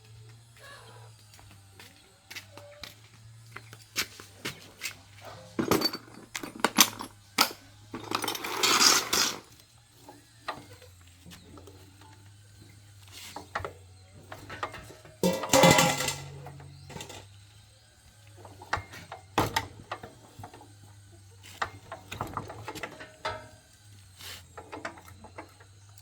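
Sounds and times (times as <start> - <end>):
metal tools clinking and knocking: 5.4 - 9.5, 14.2 - 17.3, 21.6 - 23.6.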